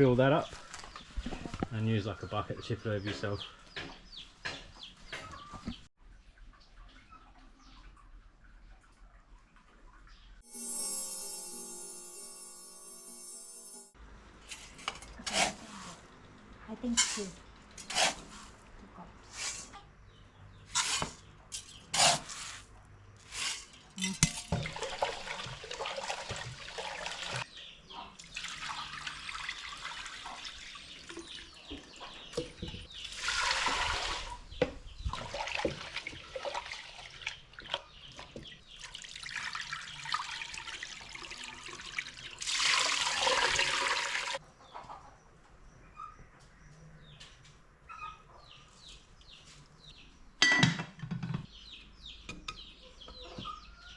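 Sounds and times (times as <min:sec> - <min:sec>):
water pouring and sloshing: 0:24.3 - 0:27.4, 0:28.2 - 0:31.9, 0:33.0 - 0:34.5, 0:35.1 - 0:44.4.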